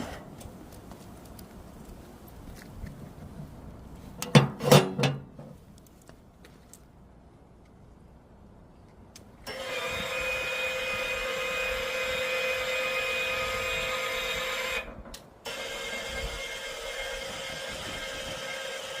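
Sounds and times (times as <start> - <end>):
electric motor whining: 9.5 - 14.9.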